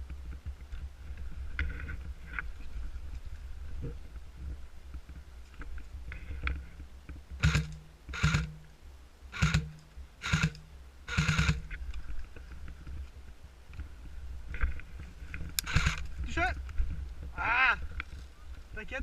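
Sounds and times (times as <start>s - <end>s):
short crunching noises: 14.5s - 16.6s.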